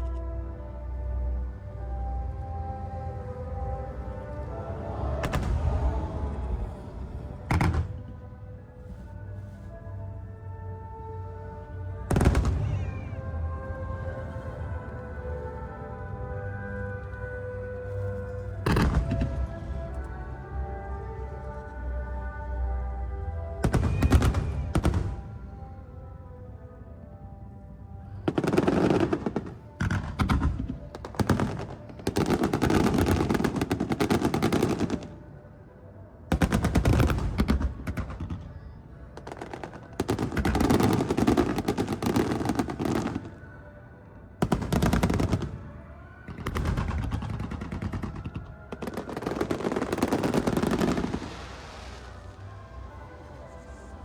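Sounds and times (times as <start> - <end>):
fireworks bursts and crackle: 5.1 - 8.2, 12.1 - 15.6, 18.2 - 20.1, 23.6 - 25.6, 28.2 - 35.3, 36.3 - 43.4, 44.4 - 54.0.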